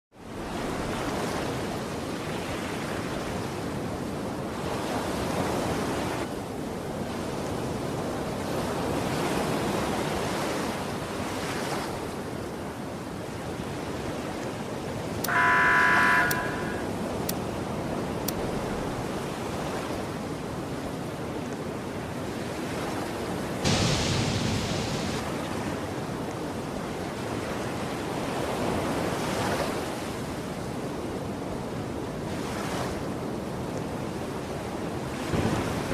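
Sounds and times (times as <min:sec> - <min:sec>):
waves washing in: 0:00.2 - 0:35.9
short pitched sound: 0:15.3 - 0:16.9
wave crash: 0:23.6 - 0:25.4.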